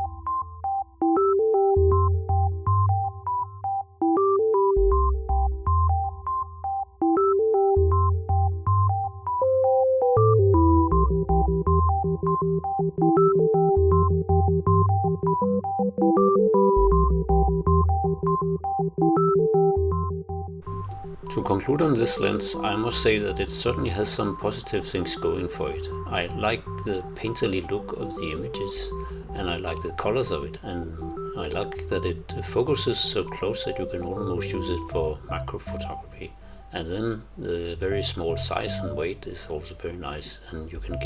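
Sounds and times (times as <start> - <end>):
synthesizer and electric piano tune: 0.0 - 41.0
steady bass line: 10.2 - 15.9, 16.6 - 39.4.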